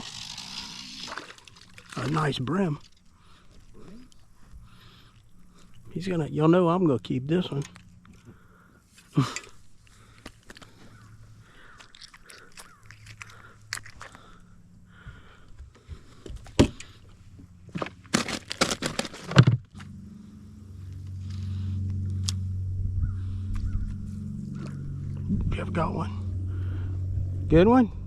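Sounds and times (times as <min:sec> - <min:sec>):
low motor hum: 0:00.0 - 0:28.0
clicks and knocks of handling gear: 0:09.0 - 0:10.8, 0:17.7 - 0:19.9.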